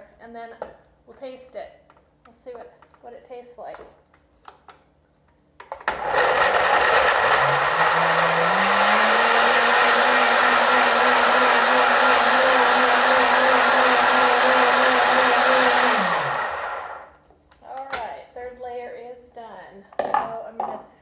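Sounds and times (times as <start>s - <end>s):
blender running: 5.9s - 17.2s.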